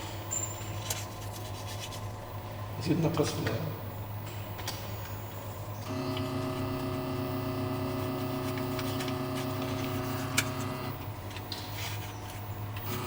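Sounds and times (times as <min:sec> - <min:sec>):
milling machine drive whine: 0:02.0 - 0:13.0.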